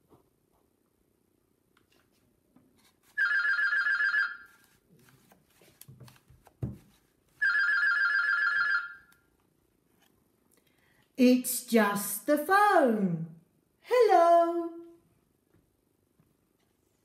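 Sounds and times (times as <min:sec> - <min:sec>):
telephone ringing: 0:03.2 - 0:04.5, 0:07.4 - 0:09.2.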